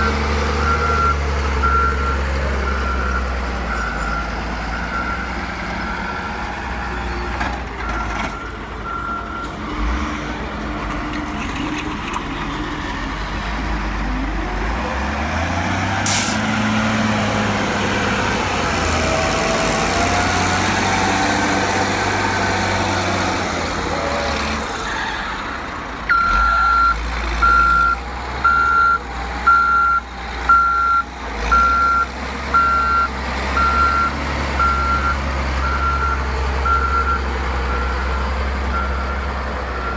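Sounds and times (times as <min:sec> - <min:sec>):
reversing alarm beeping: 0:00.0 - 0:05.5, 0:26.1 - 0:39.9
diesel construction machinery: 0:00.0 - 0:39.9.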